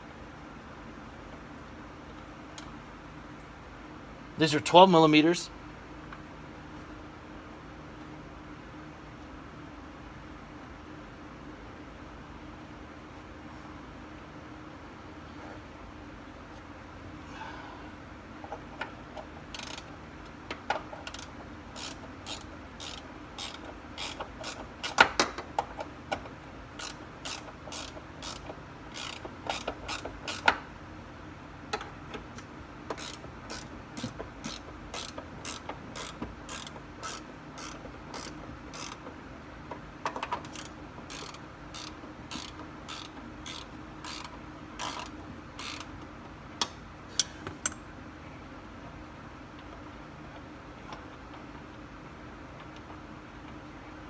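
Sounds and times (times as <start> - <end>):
ratchet wrench clicking: 19.5 - 19.9, 21.0 - 30.6, 32.9 - 39.1, 40.1 - 46.0.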